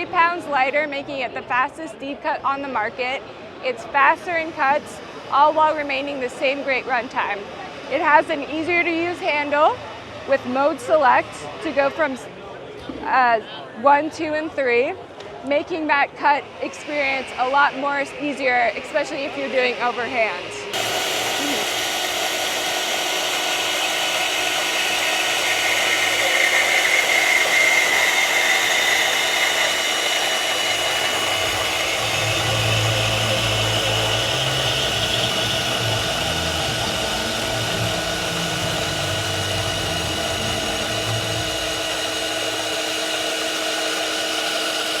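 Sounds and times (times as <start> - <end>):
cordless bandsaw whining: 16.0 - 45.0.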